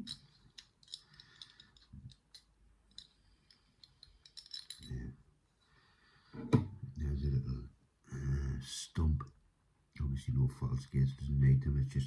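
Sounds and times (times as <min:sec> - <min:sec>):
metallic clicks of lock parts: 0:00.0 - 0:04.9
small metal parts rattling: 0:00.0 - 0:05.0.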